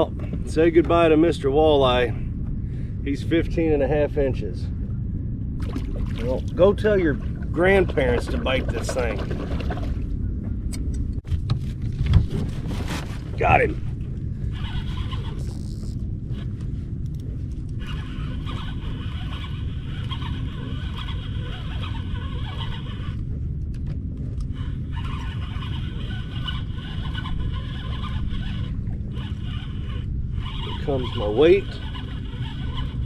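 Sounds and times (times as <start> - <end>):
steady low rumble: 0.0 - 33.0
fishing reel whirring: 14.4 - 23.4, 24.4 - 33.0.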